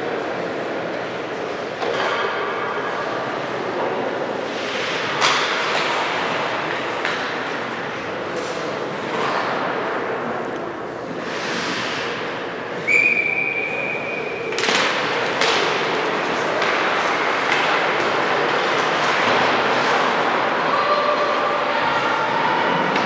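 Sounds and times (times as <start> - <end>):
ice rink ambience: 0.0 - 23.0
referee's whistle: 12.8 - 14.4.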